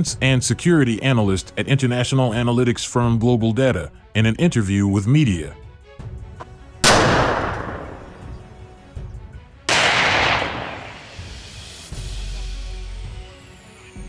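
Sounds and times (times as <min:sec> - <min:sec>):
music: 0:00.0 - 0:14.0
weapon blasts with rolling echo: 0:06.8 - 0:08.4, 0:09.7 - 0:11.5.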